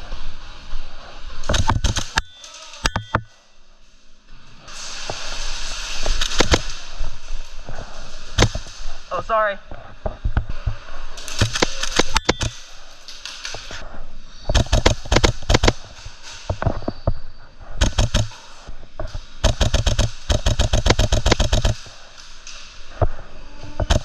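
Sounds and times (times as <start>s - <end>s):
airsoft rifle firing: 6.2s - 6.8s, 11.2s - 12.5s, 19.4s - 21.8s.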